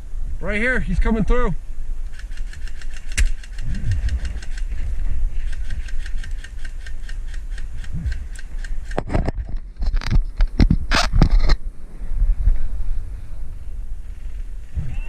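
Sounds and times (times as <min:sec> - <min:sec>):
rapid mechanical clicking: 0:02.1 - 0:04.8, 0:05.4 - 0:09.1
low rumble: 0:03.2 - 0:15.0.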